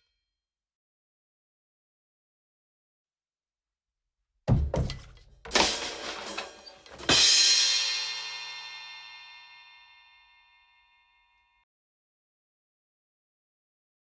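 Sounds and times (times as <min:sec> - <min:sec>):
loud metallic crash: 0:05.5 - 0:07.6.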